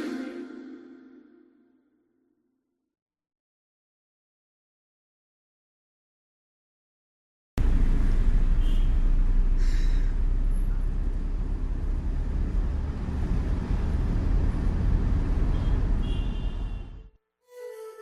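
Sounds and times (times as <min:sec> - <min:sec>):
steady low rumble: 0:07.6 - 0:16.7.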